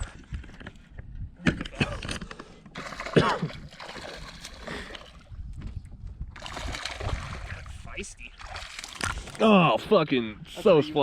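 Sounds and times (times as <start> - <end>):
water splashing: 2.8 - 5.3, 6.3 - 9.6.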